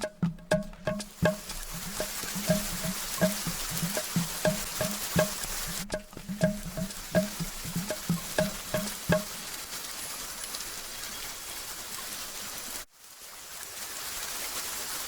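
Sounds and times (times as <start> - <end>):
pitched percussive knocks: 0.0 - 9.4
rain-like hiss: 0.0 - 15.0.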